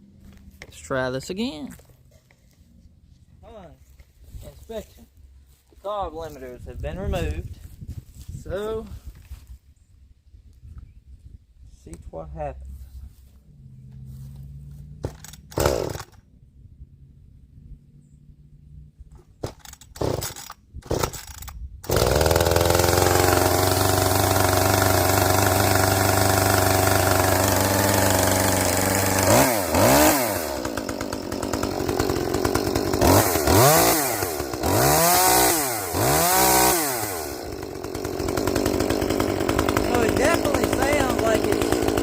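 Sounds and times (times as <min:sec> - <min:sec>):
chainsaw revving: 0:14.0 - 0:16.2, 0:19.4 - 0:42.0
chainsaw idling: 0:14.6 - 0:16.2, 0:19.4 - 0:42.0
chainsaw pull-start: 0:14.8 - 0:16.2, 0:19.1 - 0:42.0.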